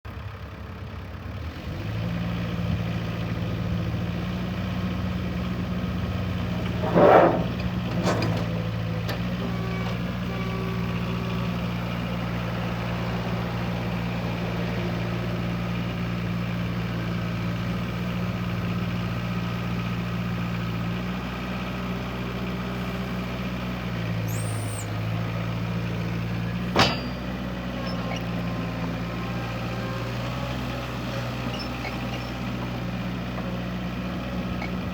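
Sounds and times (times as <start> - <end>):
skid steer engine running: 0.1 - 34.9
loud metallic clanks: 6.6 - 8.6, 26.7 - 27.4.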